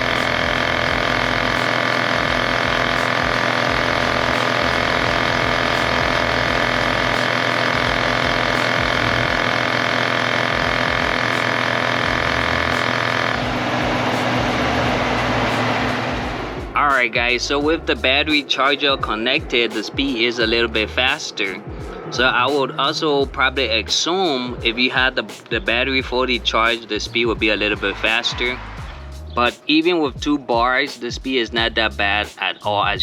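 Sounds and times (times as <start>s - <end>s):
tyre inflator compressor running: 0.0s - 22.5s.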